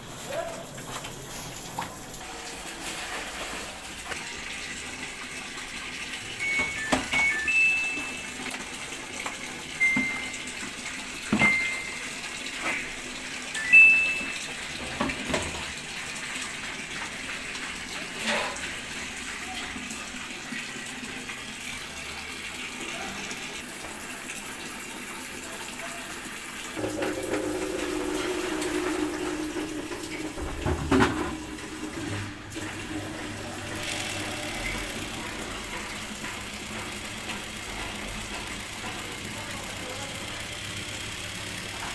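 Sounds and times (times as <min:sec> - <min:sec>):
water running into washing machine: 0:00.0 - 0:41.9
short electronic beeps: 0:09.8 - 0:10.5, 0:13.6 - 0:14.5
motor hum: 0:26.8 - 0:41.9.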